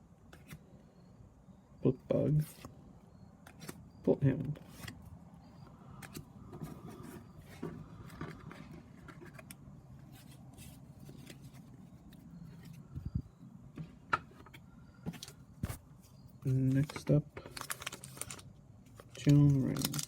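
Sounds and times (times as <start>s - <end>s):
cards and wrappers rustling: 6.0s - 13.1s, 14.5s - 20.0s.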